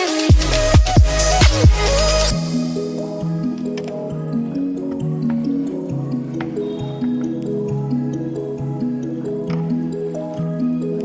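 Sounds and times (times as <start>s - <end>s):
melody of held notes: 0.0s - 11.0s
bass line: 0.3s - 3.5s.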